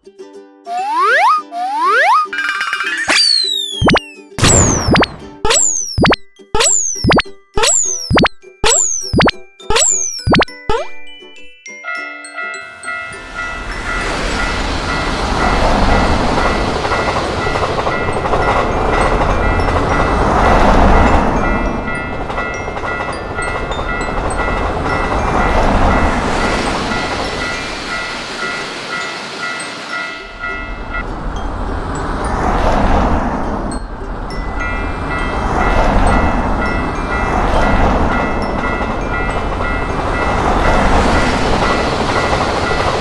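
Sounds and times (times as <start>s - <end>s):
passing trains rumbling: 12.8s - 43.0s.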